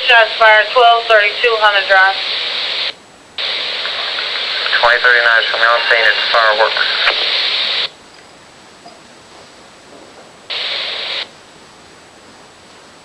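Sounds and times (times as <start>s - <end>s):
police scanner static bursts: 0.0s - 8.1s, 10.4s - 11.4s
low hiss: 0.0s - 13.0s.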